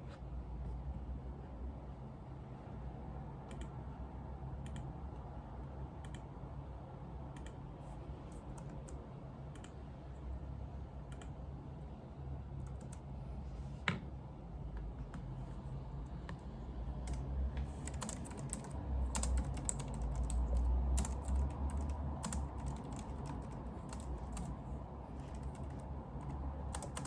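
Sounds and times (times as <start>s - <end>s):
low room hum: 0.0s - 27.0s
keyboard keys clicking: 17.0s - 24.5s, 25.2s - 27.0s.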